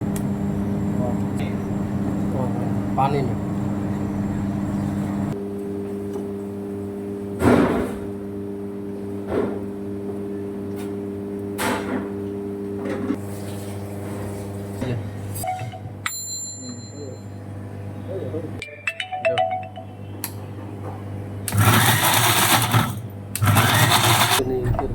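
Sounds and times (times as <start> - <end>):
low mechanical hum: 0.0 - 18.8, 19.8 - 24.9
short high beep: 15.4 - 16.1.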